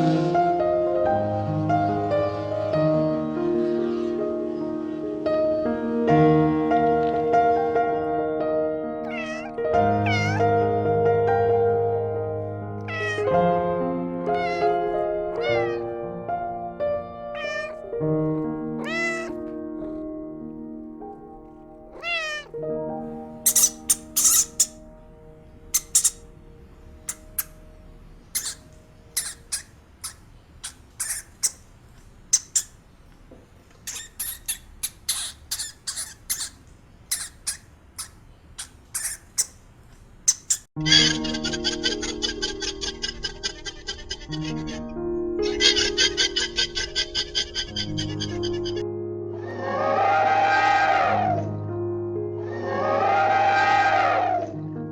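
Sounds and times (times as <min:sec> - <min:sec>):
animal squeaking: 0:09.0 - 0:10.8, 0:12.8 - 0:13.5, 0:14.2 - 0:16.0, 0:17.3 - 0:17.9, 0:18.8 - 0:20.0, 0:21.9 - 0:22.6, 0:23.4 - 0:24.8, 0:25.7 - 0:26.3, 0:27.0 - 0:27.6, 0:28.2 - 0:32.8, 0:33.8 - 0:48.8
cat meowing: 0:09.0 - 0:11.0, 0:12.8 - 0:16.0, 0:17.1 - 0:18.0, 0:18.7 - 0:20.0, 0:21.9 - 0:22.6, 0:43.1 - 0:48.8
background music of held notes: 0:40.8 - 0:54.9.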